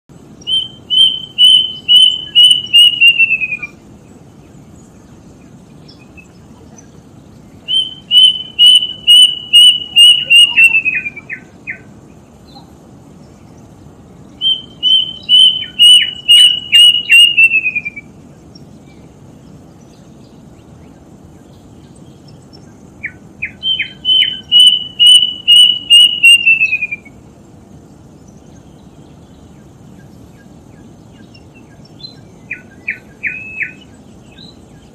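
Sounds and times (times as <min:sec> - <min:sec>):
bird whistling phrase: 0:00.5 - 0:03.8, 0:07.7 - 0:11.8, 0:14.4 - 0:18.1, 0:23.4 - 0:27.2, 0:32.5 - 0:33.9.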